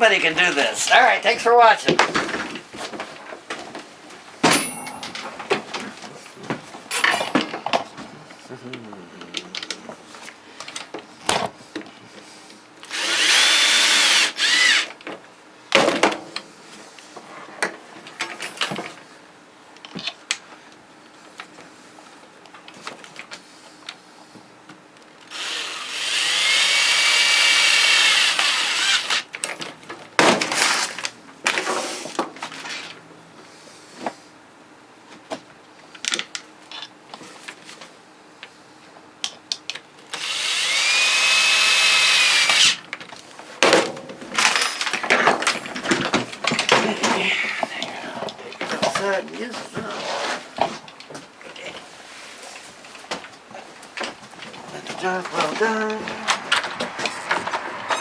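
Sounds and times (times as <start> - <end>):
power drill motor whining: 12.8 - 14.9, 25.3 - 29.3, 40.1 - 42.8.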